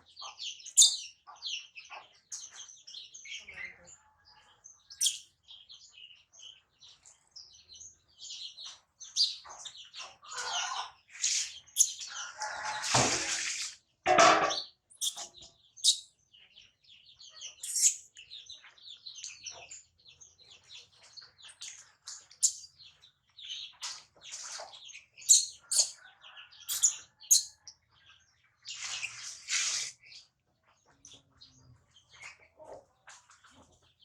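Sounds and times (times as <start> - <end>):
baby monkey squeaking and chirping: 0.6 - 1.1, 4.9 - 5.3, 10.0 - 12.2, 14.9 - 16.1, 17.5 - 18.1, 22.4 - 22.7, 25.2 - 26.0, 26.7 - 27.6.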